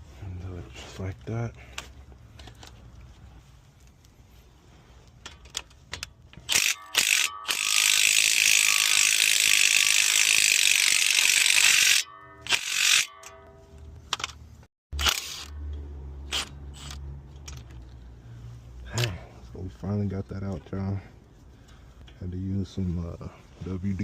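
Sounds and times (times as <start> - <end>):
ratchet wrench clicking: 5.2 - 13.4, 15.0 - 17.9.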